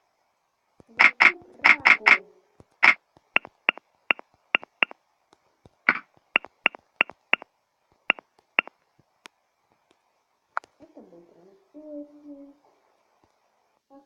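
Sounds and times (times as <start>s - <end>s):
touchscreen keyboard clicking: 1.0s - 2.2s, 2.8s - 3.8s, 4.6s - 4.9s, 5.9s - 7.4s.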